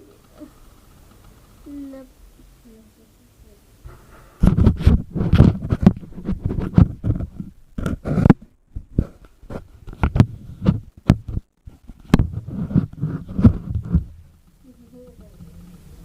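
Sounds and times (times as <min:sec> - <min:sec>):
dull knocks and thumps: 0:03.8 - 0:14.6.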